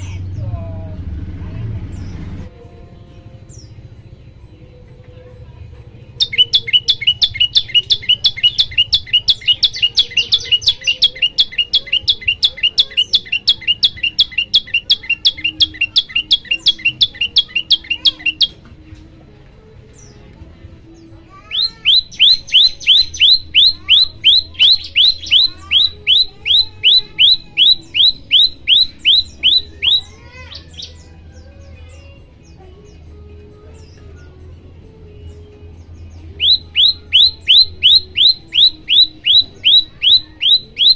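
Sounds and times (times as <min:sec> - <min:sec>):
songbird singing sharp high notes: 0:06.2 - 0:18.6, 0:21.5 - 0:31.1, 0:36.3 - 0:40.9.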